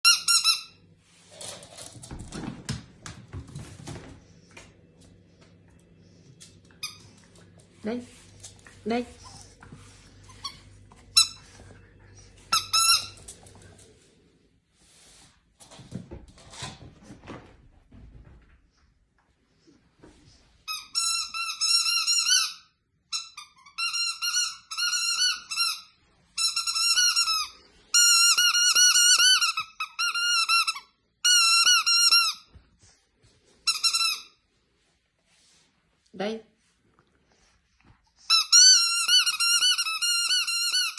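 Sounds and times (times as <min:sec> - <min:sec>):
squeaky toy squeaks: 0:20.7 - 0:32.5, 0:38.3 - 0:40.9.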